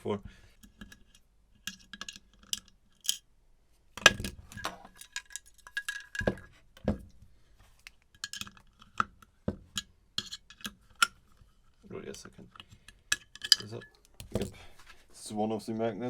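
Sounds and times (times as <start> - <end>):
small metal parts clinking: 0.6 - 3.3, 4.0 - 6.5, 7.8 - 14.9.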